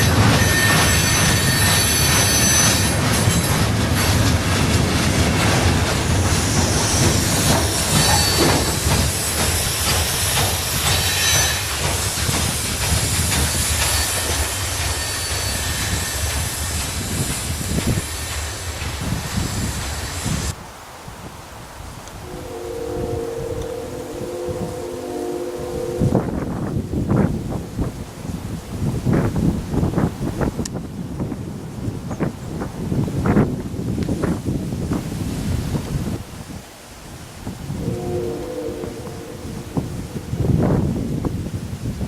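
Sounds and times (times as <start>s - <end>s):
train cars rolling on rails: 0.0s - 20.6s
high-pitched wheel squeal: 0.4s - 2.9s.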